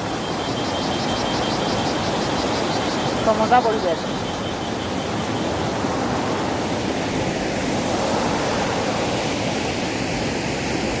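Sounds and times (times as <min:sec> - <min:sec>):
waterfall rushing and splashing: 0:05.4 - 0:11.0.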